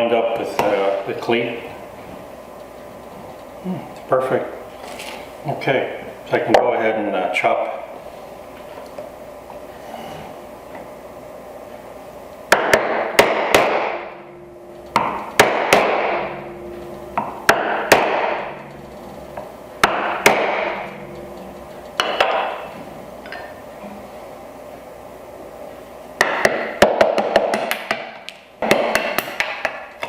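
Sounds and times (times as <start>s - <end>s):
mallet striking chisel: 12.5s - 14.1s, 14.9s - 16.6s, 17.2s - 18.6s, 19.8s - 21.0s, 22.0s - 22.7s, 26.2s - 29.9s.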